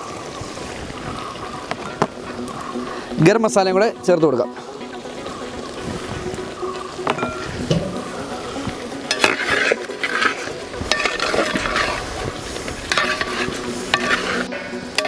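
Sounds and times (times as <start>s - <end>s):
light sizzle: 0.0s - 15.0s
spoon scraping a pan: 6.3s - 15.0s.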